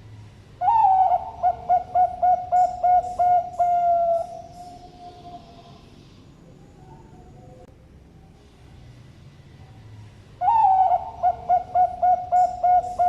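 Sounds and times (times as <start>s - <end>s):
dove cooing: 0.6s - 7.7s, 10.4s - 13.0s.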